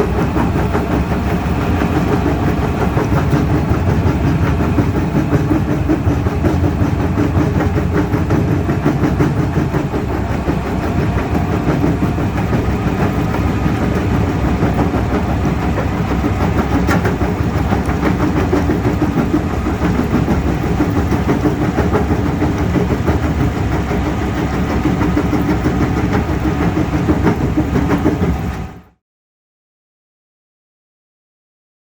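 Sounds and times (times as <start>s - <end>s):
excavator engine and hydraulics: 0.0s - 29.0s
rock clattering in crusher bucket: 15.7s - 19.2s.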